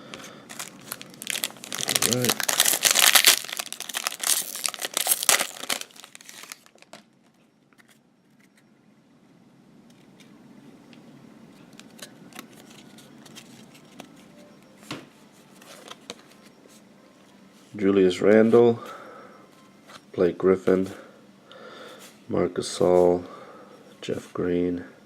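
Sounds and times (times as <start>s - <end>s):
card pack wrapper crinkling and tearing: 0.5s - 7.0s.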